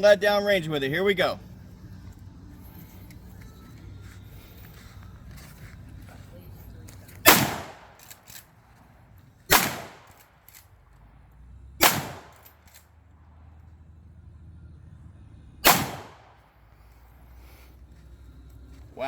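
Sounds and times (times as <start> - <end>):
rifle shots: 7.2 - 8.4, 9.5 - 10.7, 11.8 - 12.8, 15.6 - 16.4.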